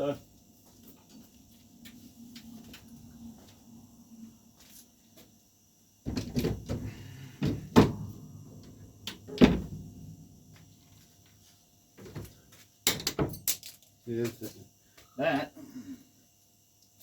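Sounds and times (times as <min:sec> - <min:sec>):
solid object knocking and bumping: 0:07.4 - 0:08.2.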